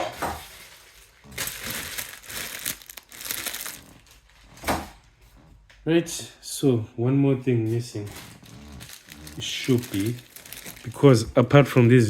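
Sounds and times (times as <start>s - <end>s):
plastic packaging crinkling: 0.1s - 4.6s, 7.6s - 11.8s.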